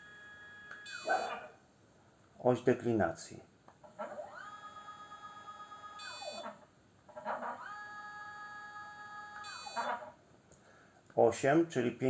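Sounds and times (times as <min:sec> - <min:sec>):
motor whine: 0:04.2 - 0:06.5, 0:07.6 - 0:09.7.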